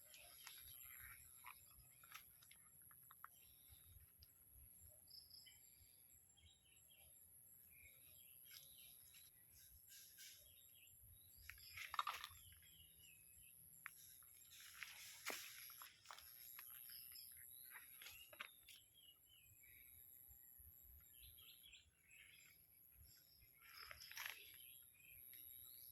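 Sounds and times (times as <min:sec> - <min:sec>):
faint bird chirps: 0:00.0 - 0:25.9
rustling or scraping noises: 0:08.5 - 0:10.6, 0:14.0 - 0:16.8.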